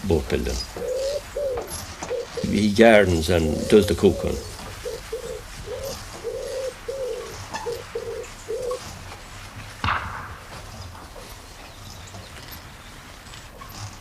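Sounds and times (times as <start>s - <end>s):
pigeon cooing: 0.2s - 9.0s
sharp knock: 9.8s - 11.2s.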